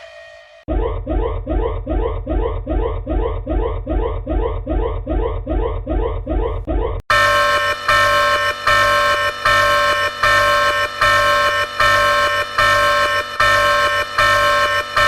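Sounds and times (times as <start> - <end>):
whooping electronic alarm tone: 6.4 - 15.0
steady held alarm tones: 6.5 - 15.0.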